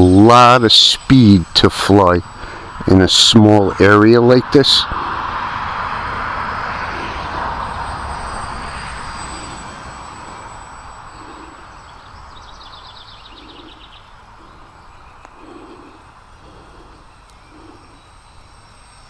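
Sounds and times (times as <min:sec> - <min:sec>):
bird trilling: 0:00.0 - 0:19.0
model plane motor whining: 0:00.0 - 0:19.0
soft low coos: 0:12.8 - 0:18.6.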